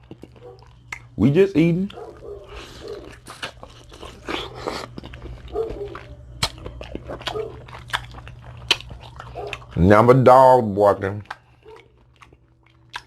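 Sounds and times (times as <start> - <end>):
chewing and crunching: 0.0 - 13.0
dog barking: 0.4 - 0.7, 1.9 - 3.1, 5.5 - 6.2, 7.2 - 7.7, 9.2 - 9.8, 11.6 - 12.0.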